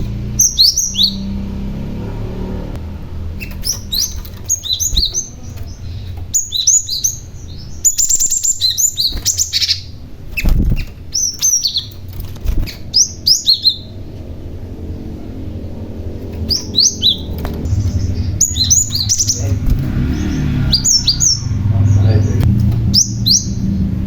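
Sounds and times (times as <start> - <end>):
bird high rapid chirps: 0.0 - 1.7, 3.3 - 14.1, 16.2 - 24.0
dull thumps: 10.3 - 11.1.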